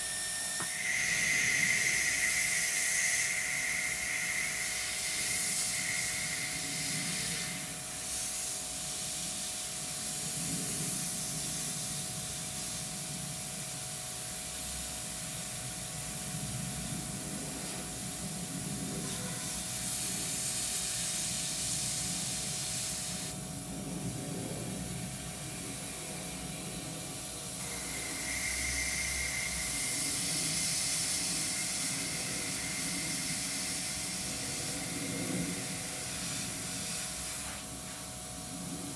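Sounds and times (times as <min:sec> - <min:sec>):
airbrush air hiss: 0:00.0 - 0:38.9
steady hum: 0:00.0 - 0:38.9.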